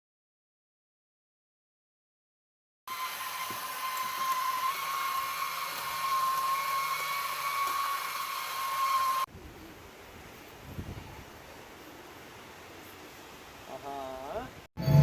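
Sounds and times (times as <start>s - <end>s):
small motor whining: 2.9s - 9.3s.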